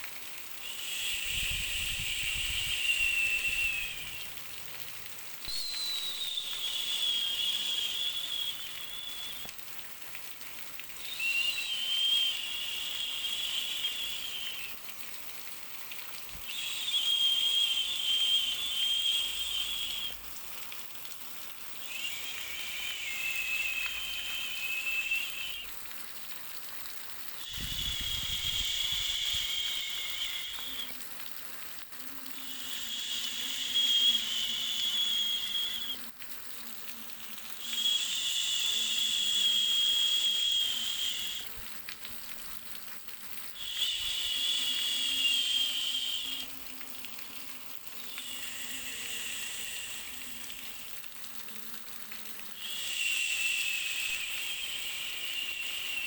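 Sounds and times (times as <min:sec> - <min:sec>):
constant hiss: 0:00.0 - 0:56.0
high wavering whistle: 0:00.6 - 0:04.6, 0:05.4 - 0:09.5, 0:10.8 - 0:14.9, 0:16.3 - 0:20.4, 0:21.7 - 0:25.8, 0:27.4 - 0:31.0, 0:32.2 - 0:36.1, 0:37.6 - 0:41.7, 0:43.6 - 0:51.1, 0:52.6 - 0:56.0.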